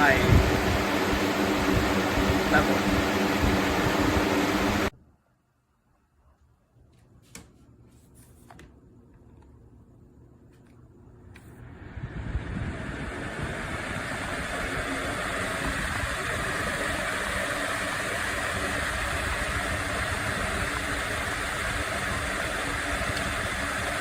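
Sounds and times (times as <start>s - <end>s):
box fan whooshing: 0.0s - 4.9s, 11.4s - 24.0s.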